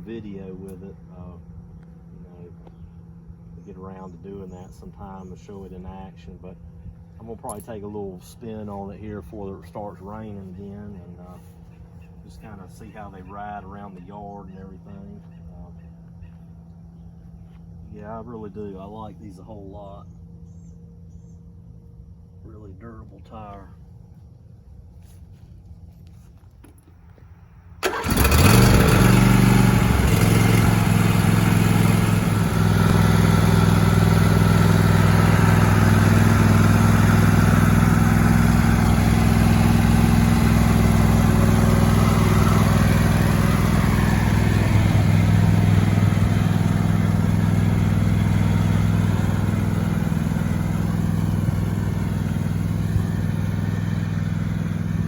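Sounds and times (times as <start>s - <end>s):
lawn tractor engine running: 27.8s - 55.0s.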